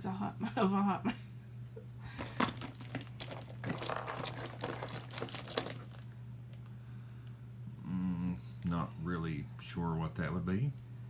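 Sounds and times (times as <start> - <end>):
hands rummaging through toys: 2.2 - 6.1
packaging crinkling: 2.2 - 6.6.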